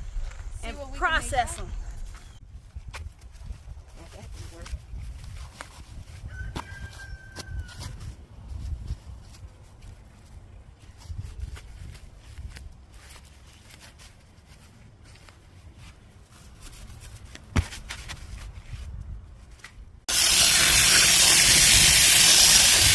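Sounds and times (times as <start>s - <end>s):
rubbing and handling noises: 10.9s - 19.8s
loud steady hiss: 20.1s - 22.9s.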